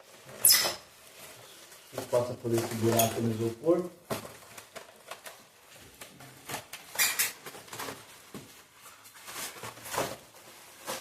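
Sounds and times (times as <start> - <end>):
packing material rustling: 0.0 - 11.0
squeaky scrape: 0.3 - 1.6, 6.9 - 7.4.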